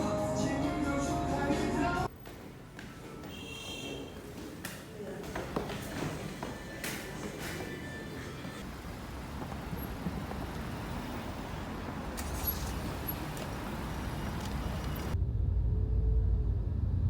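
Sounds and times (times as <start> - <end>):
distant road traffic: 2.1 - 15.2
faint clicks: 14.3 - 15.2.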